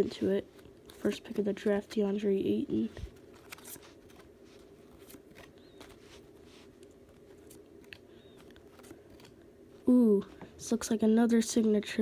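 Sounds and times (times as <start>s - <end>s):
trading cards being handled: 0.0s - 10.6s
steady low hum: 0.0s - 12.0s.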